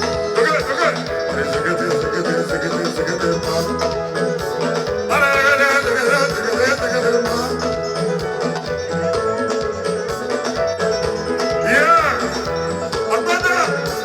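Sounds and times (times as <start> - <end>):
person singing: 0.0 - 8.2, 11.5 - 14.0
electric guitars: 0.0 - 14.0
steady beat: 0.0 - 14.0.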